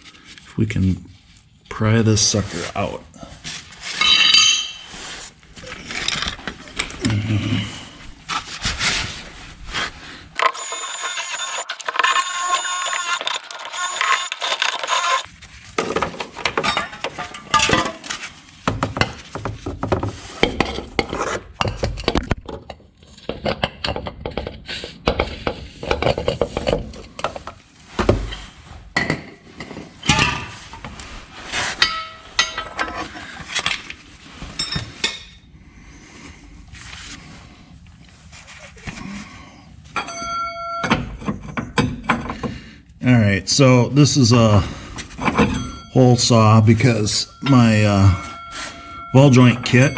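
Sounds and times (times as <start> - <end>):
steel tools knocking and scraping: 4.0 - 4.9, 10.4 - 15.3, 31.8 - 33.0
high-pitched mechanical noise: 10.4 - 15.3.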